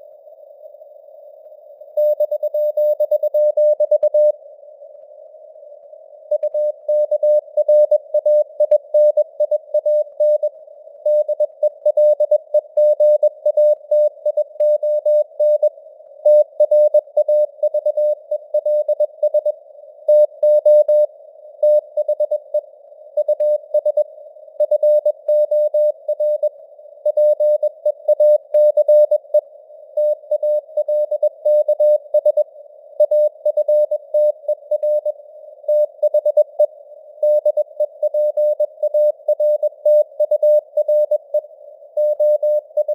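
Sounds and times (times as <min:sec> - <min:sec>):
morse code beeps: 0:33.0 - 0:35.1, 0:37.2 - 0:41.4, 0:42.0 - 0:42.9.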